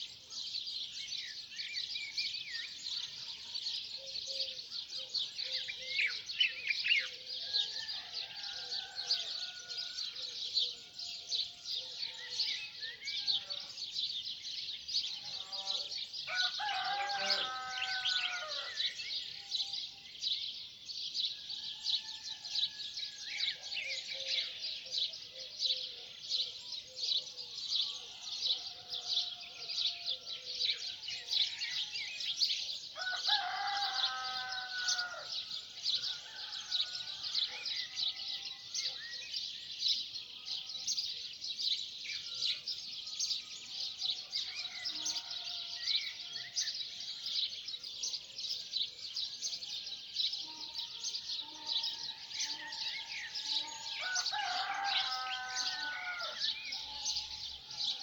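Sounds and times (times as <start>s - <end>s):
rooster crowing: 7.5s - 10.2s, 15.4s - 18.9s, 33.0s - 35.4s, 44.4s - 46.6s, 50.4s - 58.0s.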